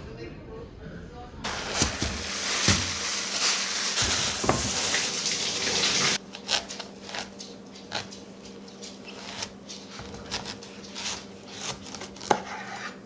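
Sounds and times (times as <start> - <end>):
water running from a tap: 1.5 - 10.0.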